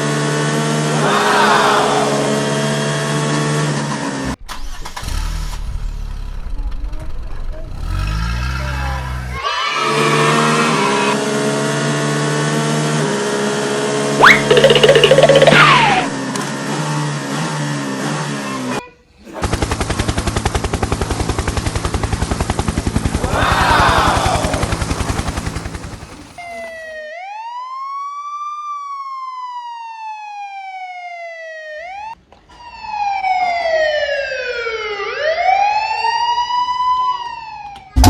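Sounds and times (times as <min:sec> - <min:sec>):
wailing siren: 0:00.0 - 0:03.5, 0:09.5 - 0:12.1, 0:23.2 - 0:25.8, 0:26.4 - 0:38.0.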